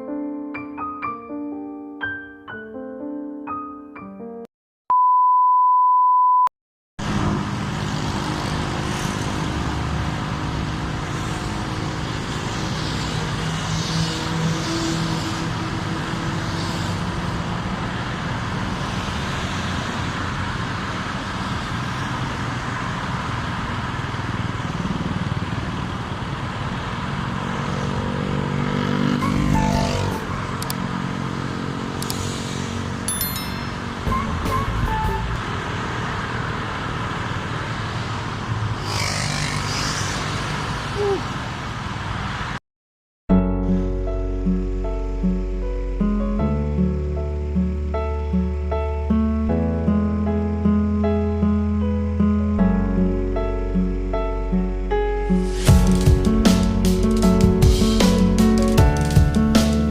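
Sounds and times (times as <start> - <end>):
vehicle passing: 7.0 - 34.1, 35.3 - 42.6
road traffic: 7.0 - 42.6, 43.6 - 59.9
steady electronic beep: 33.1 - 34.3.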